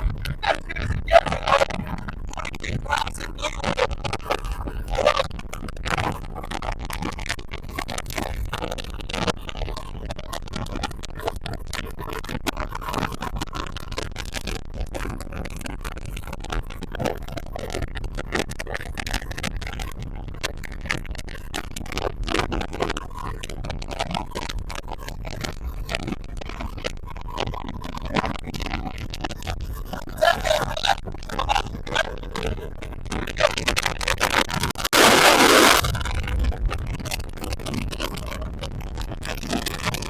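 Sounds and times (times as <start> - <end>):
wind buffeting microphone: 0.0 - 6.5, 34.9 - 40.0.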